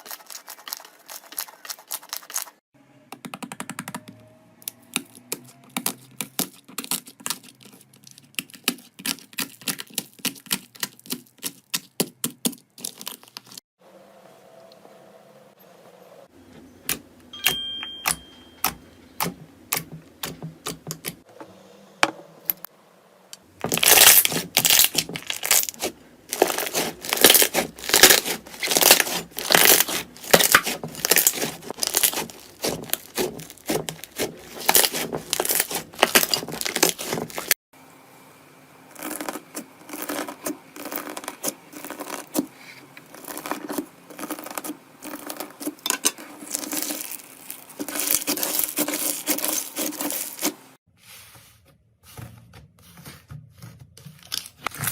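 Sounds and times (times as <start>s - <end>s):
slime crackling and popping: 23.7s - 37.5s, 39.0s - 42.4s, 43.1s - 45.7s.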